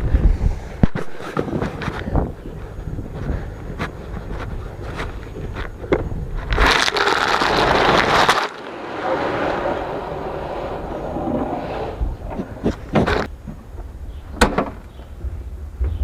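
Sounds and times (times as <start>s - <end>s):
dry feed pouring into a feeder: 6.6s - 8.7s.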